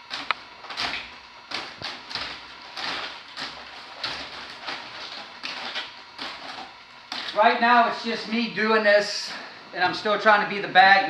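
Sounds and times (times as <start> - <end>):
plastic containers crinkling and clattering: 0.0 - 7.5.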